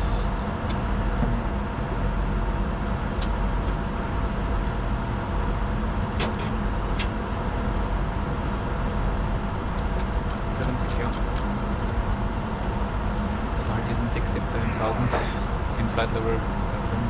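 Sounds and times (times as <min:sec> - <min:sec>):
jet airflow and engine noise: 0:08.3 - 0:17.0.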